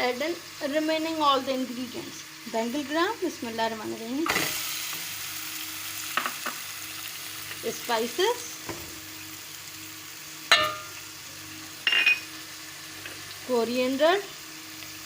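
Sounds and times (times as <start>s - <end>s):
hot oil sizzling in a pan: 0.0s - 15.0s.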